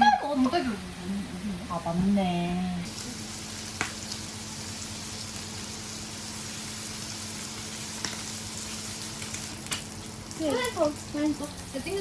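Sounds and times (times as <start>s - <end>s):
food sizzling in a pan: 1.6s - 12.0s.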